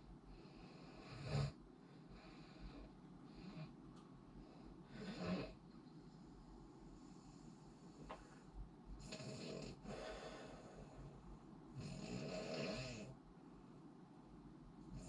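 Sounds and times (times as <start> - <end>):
person snoring: 11.8 - 13.1.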